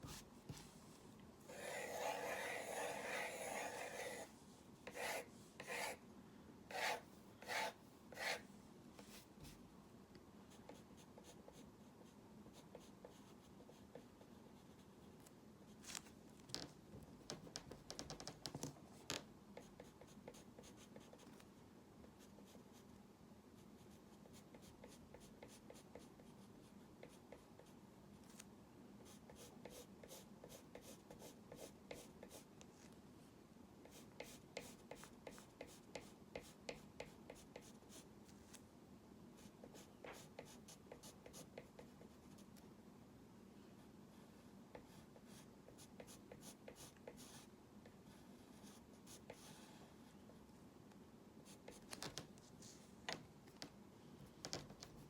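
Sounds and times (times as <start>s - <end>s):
drawing strokes scratching: 1.5s - 6.0s, 6.7s - 8.5s.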